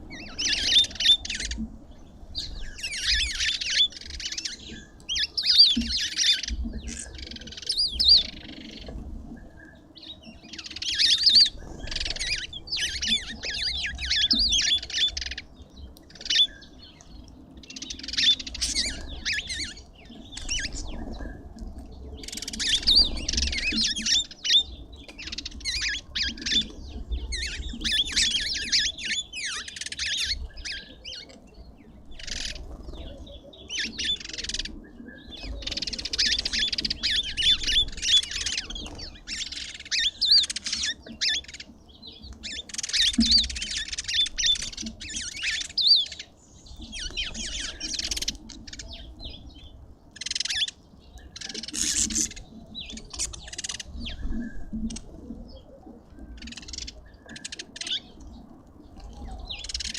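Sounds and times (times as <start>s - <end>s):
birds squawking and chirping: 0.0s - 59.9s.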